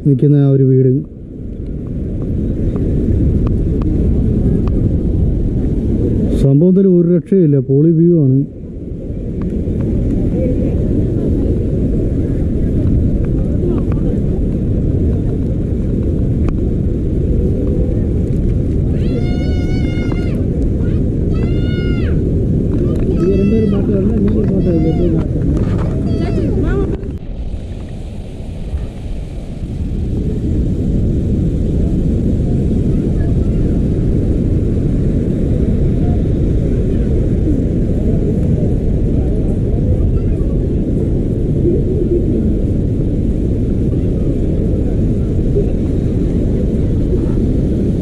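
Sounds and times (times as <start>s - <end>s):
waterfall roaring: 18.4s - 30.4s.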